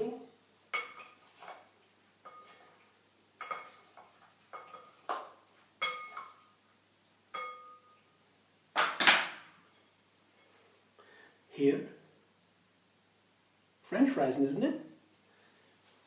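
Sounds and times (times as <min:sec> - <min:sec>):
utensil clinking against dishware: 0:00.7 - 0:01.6, 0:02.2 - 0:02.7, 0:03.4 - 0:06.4, 0:07.4 - 0:08.0.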